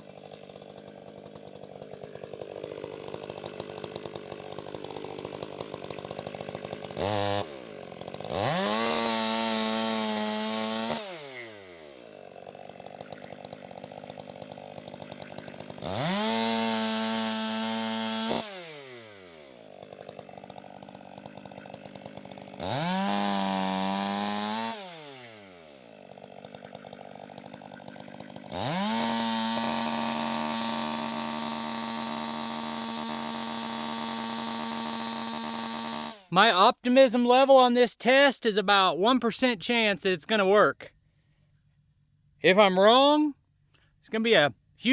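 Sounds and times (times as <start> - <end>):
chainsaw revving: 0.0 - 36.6.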